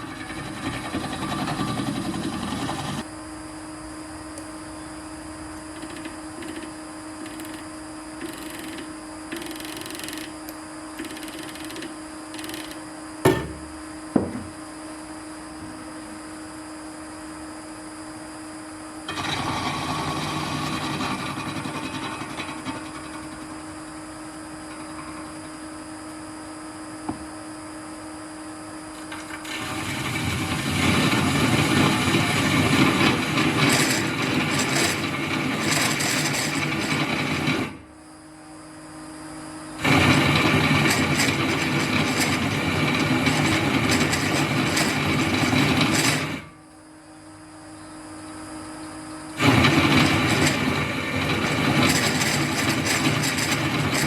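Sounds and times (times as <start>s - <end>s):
cutter grinding through steel: 0.0s - 3.0s, 19.1s - 23.7s, 29.0s - 37.8s, 39.8s - 46.5s, 49.4s - 54.0s
drill press motor hum: 0.0s - 3.1s, 5.4s - 14.6s, 19.0s - 27.4s, 28.8s - 37.9s, 39.7s - 46.6s, 49.3s - 54.0s
sharp knocks: 13.2s - 14.5s.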